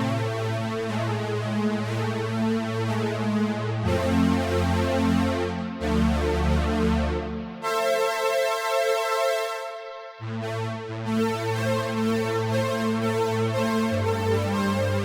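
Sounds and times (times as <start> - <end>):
analog synthesizer chords: 3.8 - 15.0.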